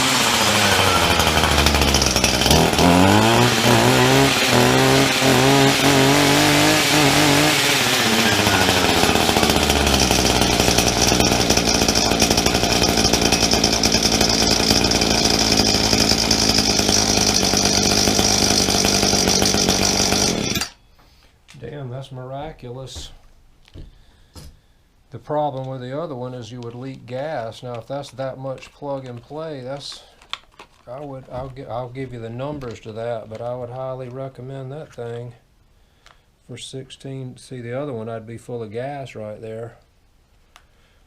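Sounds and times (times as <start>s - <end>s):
brush cutter engine revving: 0.0s - 20.8s.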